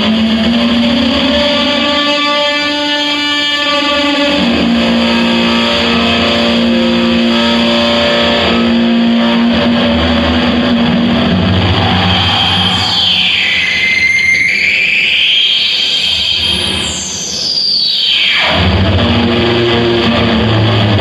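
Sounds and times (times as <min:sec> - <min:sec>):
distorted noise wall: 0:00.0 - 0:21.0
steady droning tones: 0:03.7 - 0:17.6.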